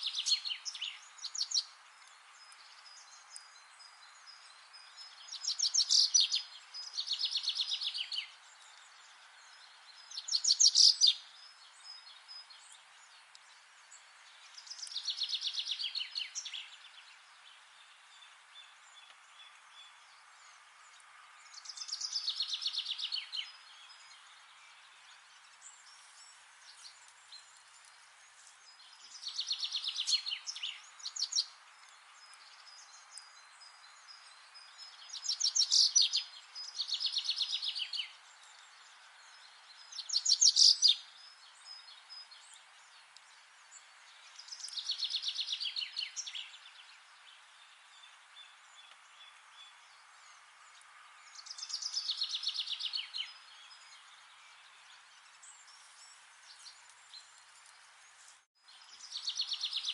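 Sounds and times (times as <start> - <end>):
soft background hiss: 0.0 - 59.9.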